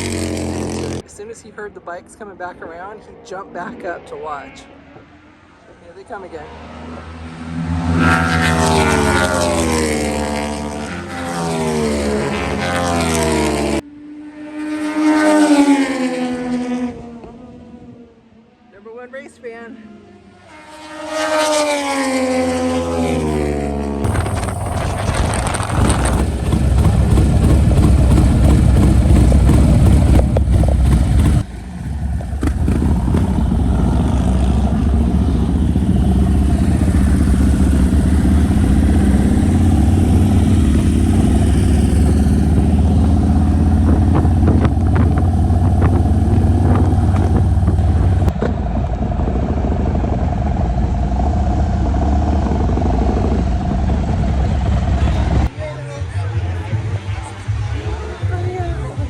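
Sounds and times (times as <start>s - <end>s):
motorcycle engines running: 0.0s - 1.1s, 4.7s - 18.0s, 20.1s - 55.6s.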